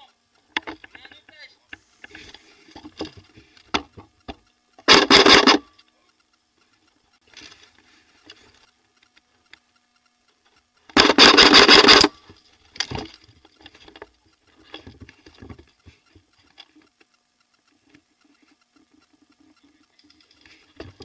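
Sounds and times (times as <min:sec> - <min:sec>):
airsoft gun full-auto burst: 0:04.8 - 0:05.7, 0:10.9 - 0:12.1.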